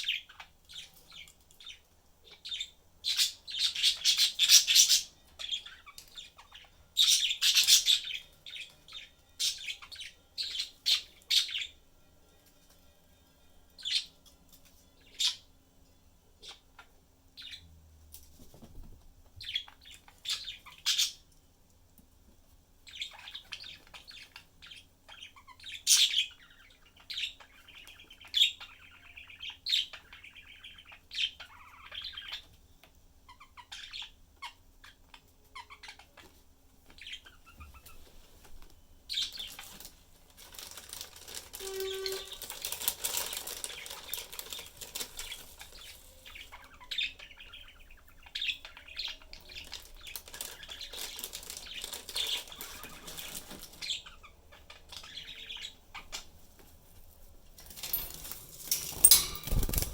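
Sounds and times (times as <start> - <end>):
budgies chirping: 0.0 - 11.8, 16.4 - 17.6, 19.4 - 21.2, 22.8 - 38.0, 39.1 - 39.8, 41.8 - 56.4
rustling: 39.4 - 46.3, 49.6 - 54.1, 56.1 - 59.9.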